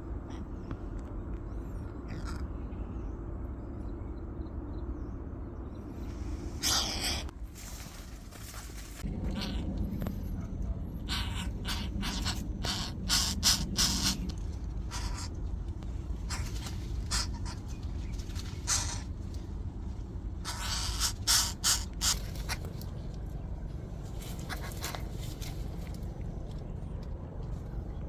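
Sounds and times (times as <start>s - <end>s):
steady low rumble: 0.0s - 28.0s
rustling and scraping: 7.3s - 10.6s, 14.3s - 20.2s, 22.1s - 27.8s.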